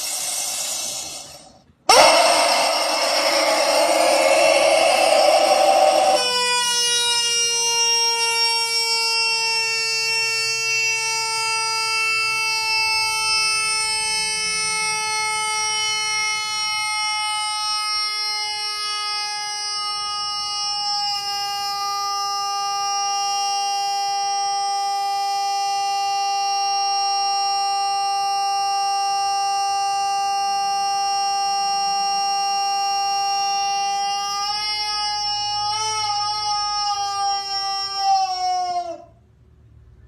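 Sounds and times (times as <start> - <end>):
steady tone with overtones: 0.0 - 6.2.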